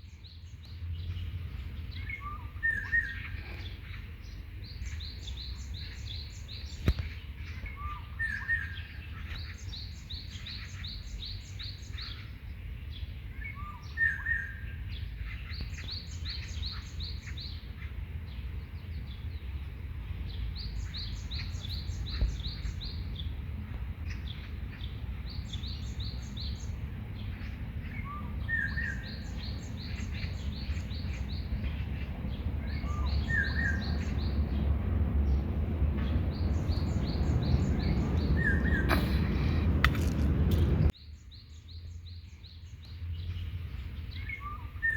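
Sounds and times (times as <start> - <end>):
songbird singing: 0.0 - 44.9
steady low rumble: 29.1 - 41.0
bird giving low calls: 36.4 - 40.9.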